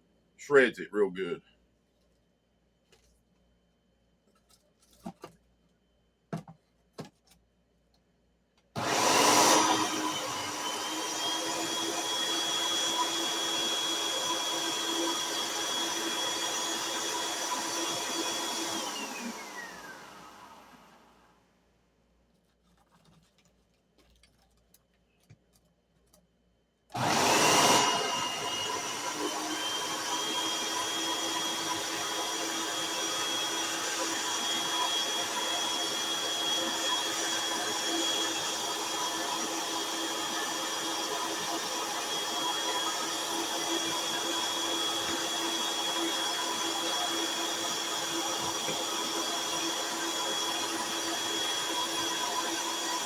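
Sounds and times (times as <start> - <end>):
food shredder motor whining: 8.8 - 21.3, 26.9 - 53.0.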